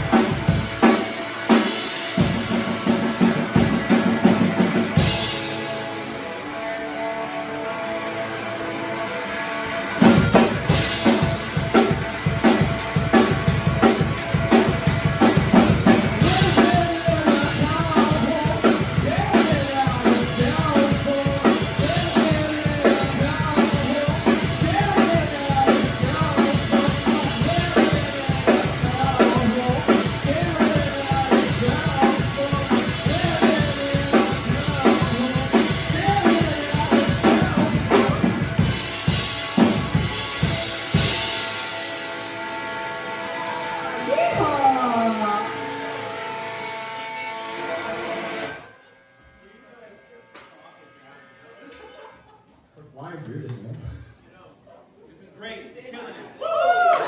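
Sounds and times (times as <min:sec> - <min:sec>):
drum kit beat: 0:00.0 - 0:06.1, 0:09.9 - 0:43.1
live band playing: 0:00.0 - 0:48.6.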